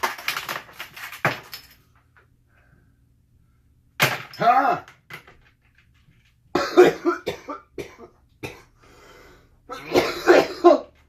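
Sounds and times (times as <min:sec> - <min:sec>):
man coughing: 0:06.6 - 0:08.7, 0:09.7 - 0:10.9.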